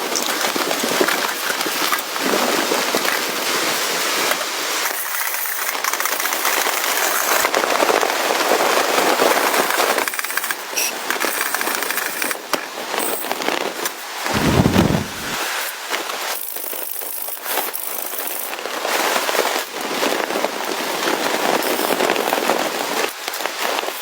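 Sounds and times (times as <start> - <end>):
wood fire crackling and popping: 14.3 - 15.4.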